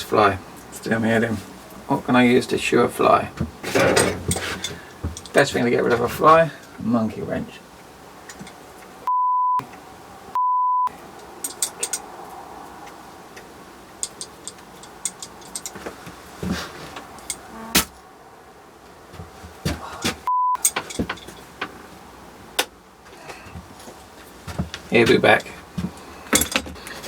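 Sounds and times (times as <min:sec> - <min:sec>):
handling clicks and knocks: 0:03.3 - 0:06.4, 0:08.3 - 0:08.9, 0:11.2 - 0:12.1, 0:12.9 - 0:17.9, 0:19.1 - 0:21.9, 0:22.6 - 0:27.0
censor bleeps: 0:09.0 - 0:09.6, 0:10.4 - 0:10.9, 0:17.5 - 0:17.8, 0:20.3 - 0:20.6.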